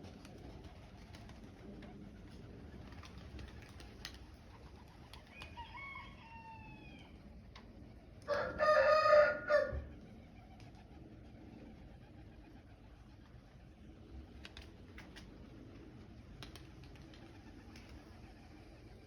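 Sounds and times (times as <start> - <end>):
rooster crowing: 5.4 - 7.1, 8.3 - 9.9.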